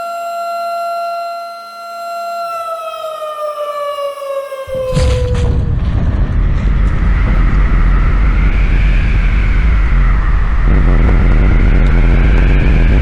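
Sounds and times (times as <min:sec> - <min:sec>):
explosion low rumble: 0:04.7 - 0:13.0.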